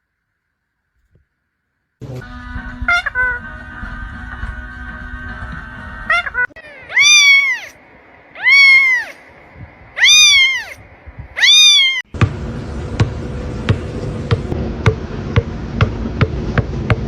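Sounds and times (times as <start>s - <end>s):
cat meowing: 6.1s - 7.8s, 8.4s - 9.2s, 10.0s - 12.1s.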